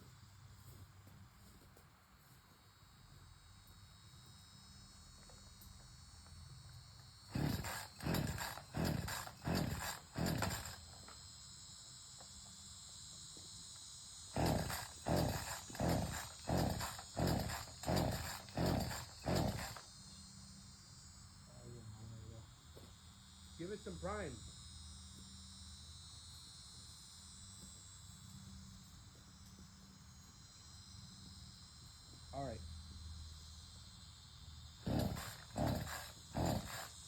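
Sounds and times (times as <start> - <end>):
chainsaw starter cord pulls: 7.3 - 10.9, 14.4 - 19.8, 34.9 - 37.0
engine turning over: 7.3 - 10.9, 14.4 - 19.8, 34.8 - 37.0.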